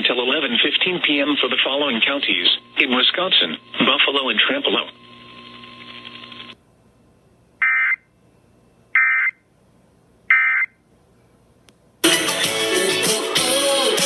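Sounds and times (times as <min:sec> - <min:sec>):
radio music: 0:00.0 - 0:06.5
steady hum: 0:00.0 - 0:12.1.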